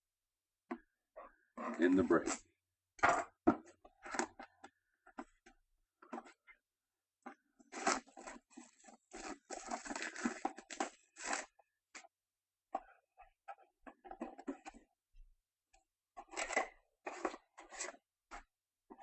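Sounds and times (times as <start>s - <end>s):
plastic rustles and clicks: 7.3s - 12.1s
plastic wrapping crinkling and tearing: 7.7s - 11.5s.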